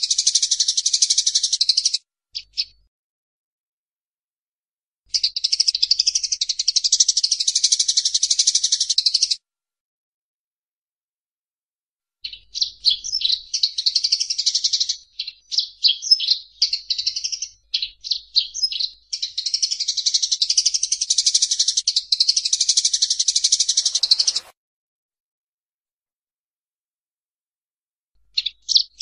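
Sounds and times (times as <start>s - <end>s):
sparrows chirping rapidly: 0.0s - 2.8s, 5.1s - 9.4s, 12.2s - 24.5s, 28.3s - 29.0s.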